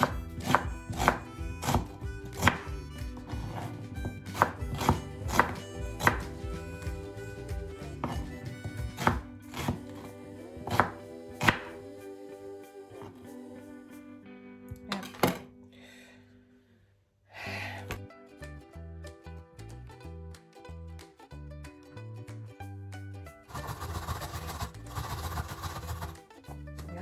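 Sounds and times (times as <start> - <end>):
knife chopping on cutting board: 0.0 - 11.8.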